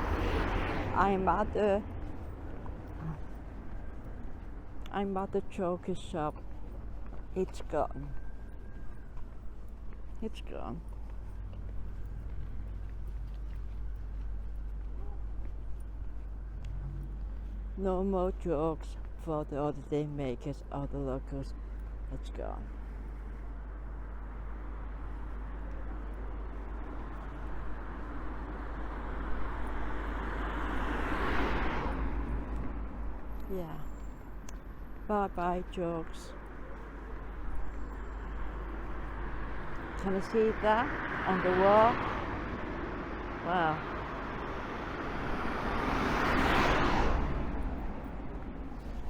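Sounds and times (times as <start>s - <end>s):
vehicle passing close by: 0.0s - 4.4s, 26.8s - 33.5s, 38.4s - 49.0s
street traffic noise: 0.0s - 49.0s.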